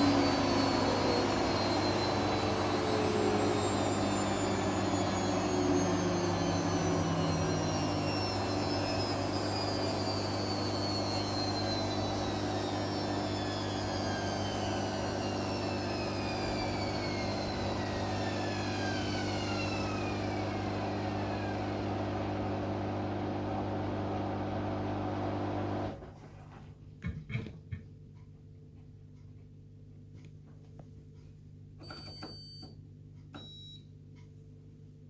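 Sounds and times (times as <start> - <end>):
washing machine motor whine: 0.0 - 26.5, 31.8 - 32.8
washing machine hum: 0.0 - 35.0.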